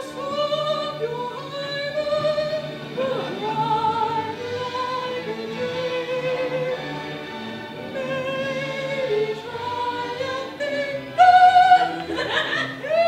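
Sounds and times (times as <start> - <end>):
woman singing operatically: 0.0 - 6.8, 7.9 - 13.0
orchestra playing: 0.0 - 13.0.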